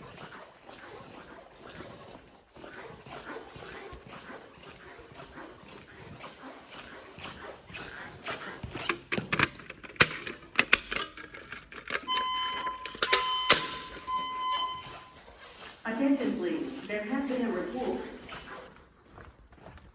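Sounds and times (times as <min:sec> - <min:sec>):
sharp clicks and knocks: 0:08.3 - 0:15.1
fire alarm alert tone: 0:12.0 - 0:15.2.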